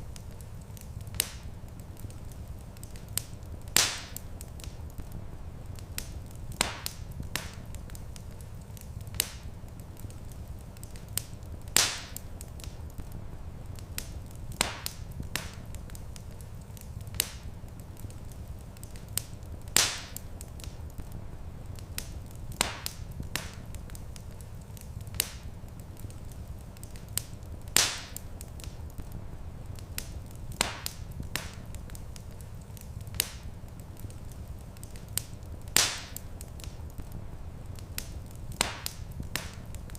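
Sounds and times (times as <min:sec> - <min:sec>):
low fire rumble: 0:00.0 - 0:39.9
wood fire crackling: 0:00.0 - 0:39.9.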